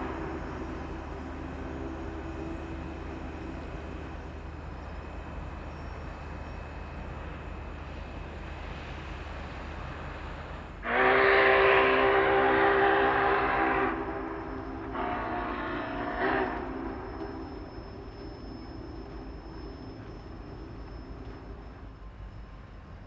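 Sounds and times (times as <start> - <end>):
steam locomotive whistle: 10.8 - 21.7.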